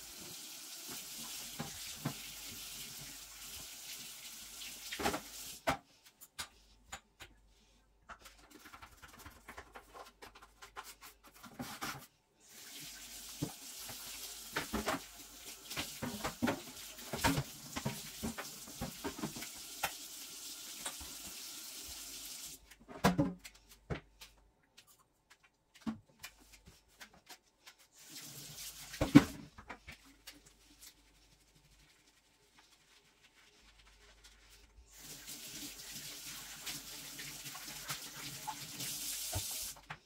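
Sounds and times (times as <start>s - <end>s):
tap water running into sink: 0.0s - 5.7s, 12.6s - 22.6s, 34.9s - 39.9s.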